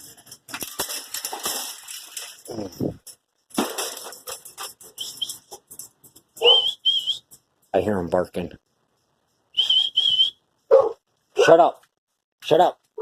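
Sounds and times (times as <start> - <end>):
rustling and handling clicks: 0.0 - 6.4
dog barking: 6.4 - 6.8, 10.7 - 11.6
short high whistles: 6.4 - 7.3, 9.6 - 10.4.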